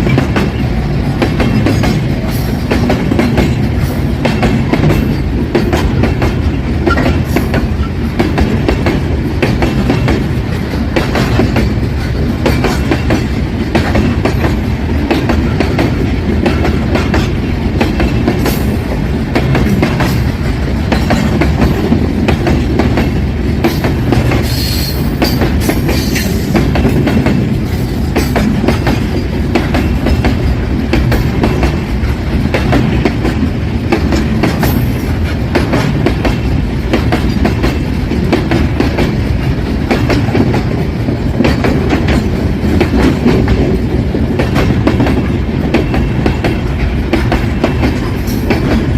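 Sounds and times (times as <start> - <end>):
freight train rumbling: 0.0 - 48.9
wheels clacking over rail joints: 0.0 - 48.9.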